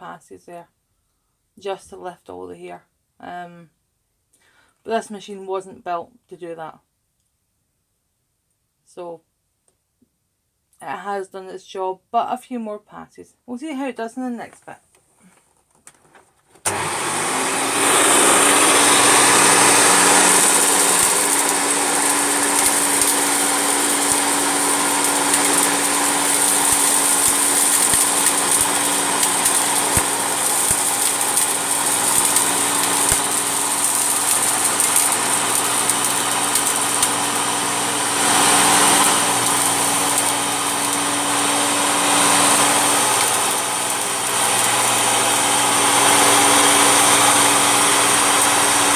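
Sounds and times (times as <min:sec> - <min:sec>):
vacuum cleaner running: 0:16.6 - 0:48.9.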